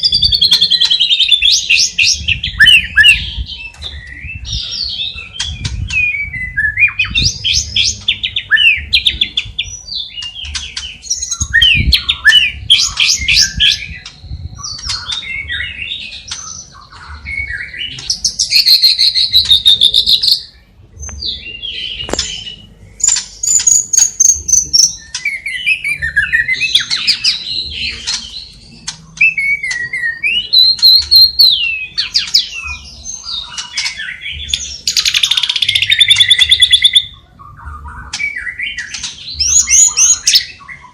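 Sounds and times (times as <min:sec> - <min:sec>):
songbird singing varied song: 0:00.0 - 0:40.9.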